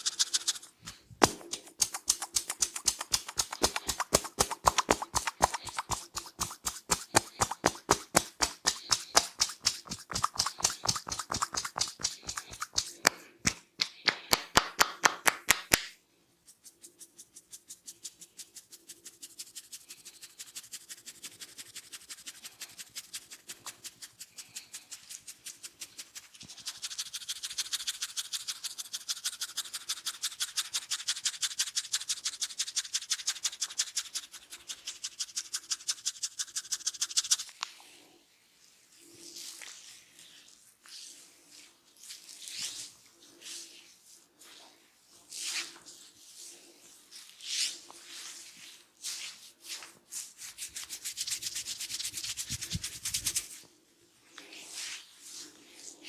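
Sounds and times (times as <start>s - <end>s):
rubbing and scratching scalp: 0.0s - 37.8s, 38.6s - 53.7s, 54.3s - 56.0s
hands tapping on head: 1.2s - 16.0s.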